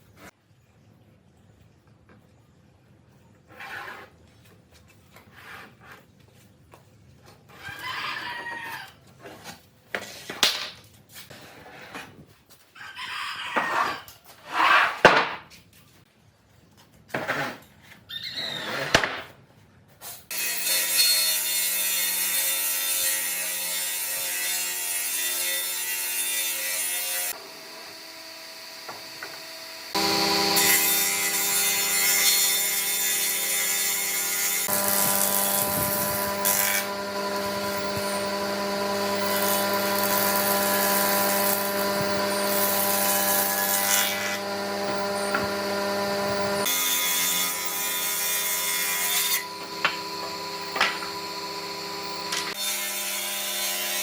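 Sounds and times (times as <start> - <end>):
hand tool scraping wood: 13.6 - 15.1, 39.0 - 46.7
electric power tool on wood: 20.3 - 54.0.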